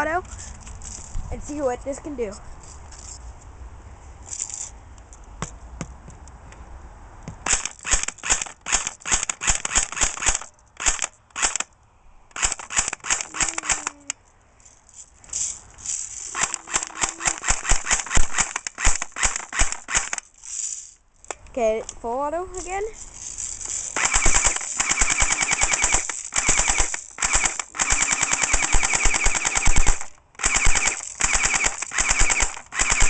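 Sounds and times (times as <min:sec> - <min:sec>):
airsoft pistol firing rapid shots: 0:07.5 - 0:11.6, 0:12.4 - 0:13.9, 0:16.4 - 0:20.2, 0:24.0 - 0:33.0.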